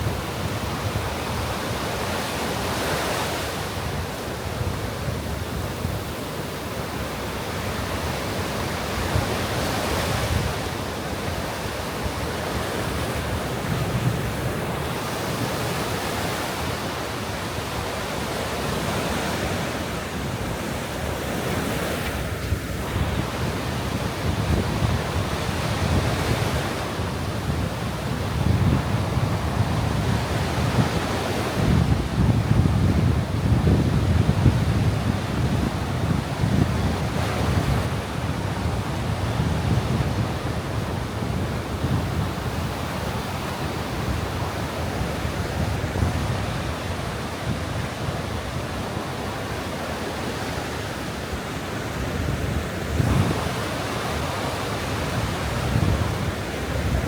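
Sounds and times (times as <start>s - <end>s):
surf washing on sand: 0.0s - 57.0s
wind buffeting microphone: 18.3s - 49.8s, 51.4s - 57.0s.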